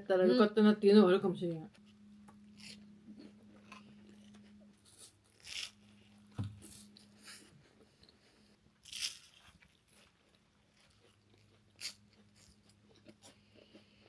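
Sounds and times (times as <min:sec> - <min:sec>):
faint steady hum: 0:00.0 - 0:14.0
crunching flaky pastry: 0:02.5 - 0:14.0
soft thump: 0:06.4 - 0:06.6.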